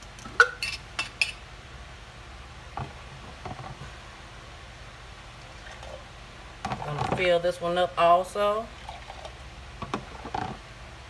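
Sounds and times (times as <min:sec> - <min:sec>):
glass jars clinking: 0:00.4 - 0:01.4.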